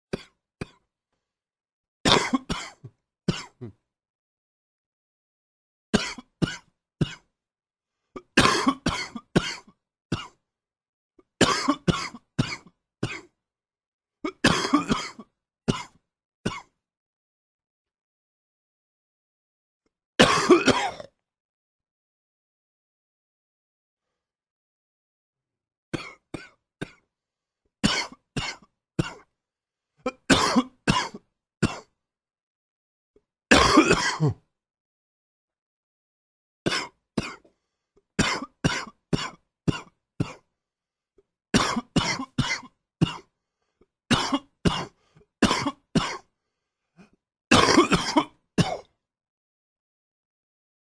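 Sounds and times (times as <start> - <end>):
man coughing: 2.1 - 3.8, 6.0 - 7.3, 8.2 - 10.4, 11.4 - 13.3, 14.3 - 16.7, 20.2 - 21.1, 27.8 - 29.2, 30.1 - 31.9, 33.5 - 34.4, 38.2 - 40.4, 41.6 - 43.3, 44.1 - 46.2, 47.5 - 48.9.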